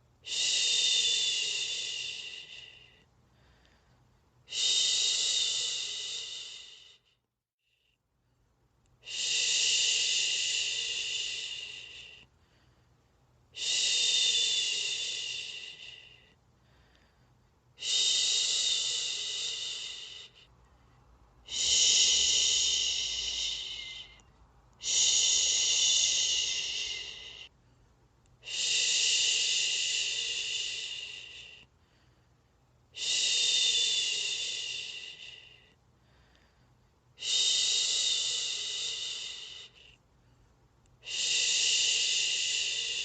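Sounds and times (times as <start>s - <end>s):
person shushing: 21.5s - 27.5s.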